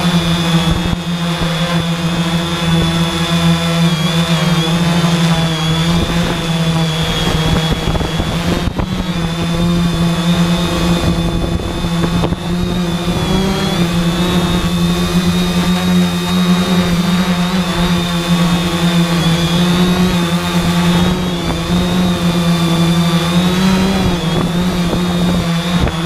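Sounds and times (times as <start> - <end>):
drone motors buzzing: 0.0 - 26.0
gusty wind rumble: 5.6 - 16.2, 17.7 - 26.0.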